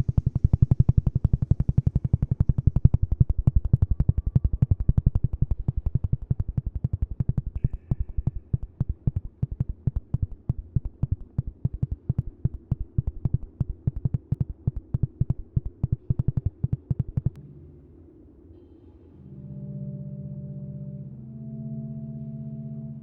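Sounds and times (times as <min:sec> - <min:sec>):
rapid low throbbing pulses: 0:00.0 - 0:17.6
low hum: 0:00.0 - 0:23.0.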